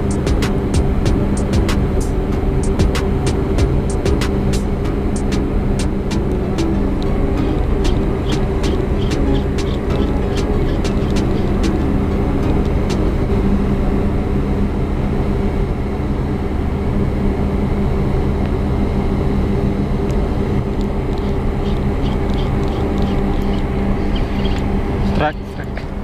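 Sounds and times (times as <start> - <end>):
large engine droning: 0.0 - 26.0.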